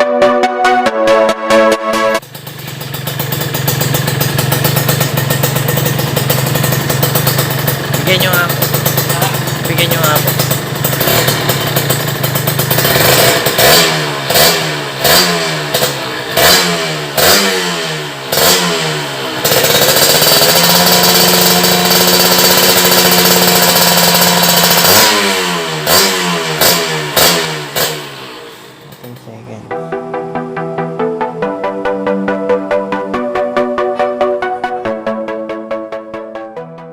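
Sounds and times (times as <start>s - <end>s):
two-stroke engine revving: 2.1s - 29.4s.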